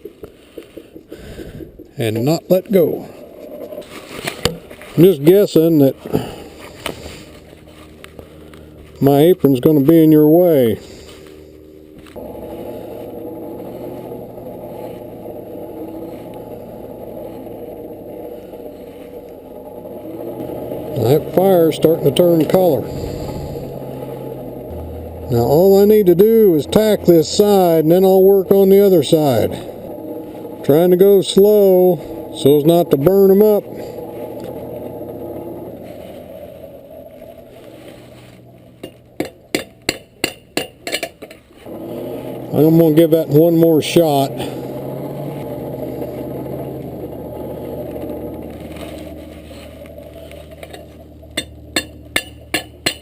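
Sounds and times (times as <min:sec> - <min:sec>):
forge blower rushing air: 0:00.0 - 0:53.0
hammer on anvil: 0:39.2 - 0:41.1, 0:51.4 - 0:53.0.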